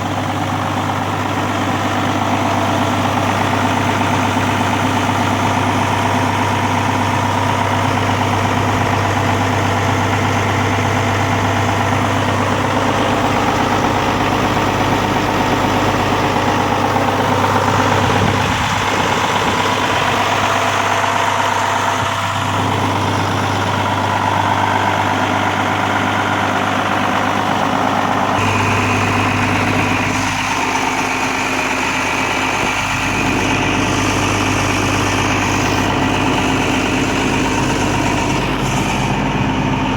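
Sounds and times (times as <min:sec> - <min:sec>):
tractor diesel engine idling: 0:00.0 - 0:39.9
steady high whine: 0:03.3 - 0:24.3, 0:27.1 - 0:39.9.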